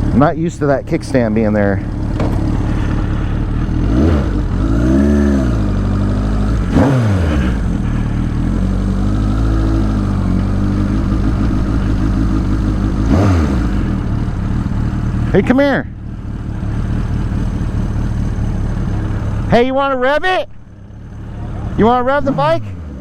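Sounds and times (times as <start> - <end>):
motorcycle engine idling and revving: 0.0 - 23.0.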